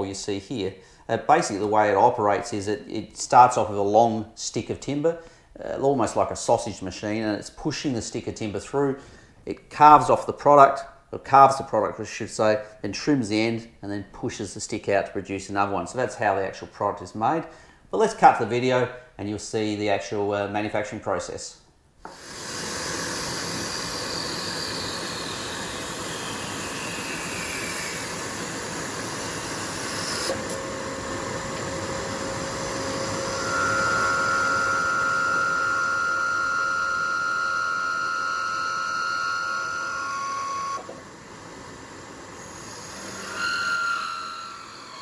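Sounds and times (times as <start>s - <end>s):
wood lathe cutting: 22.0s - 45.0s.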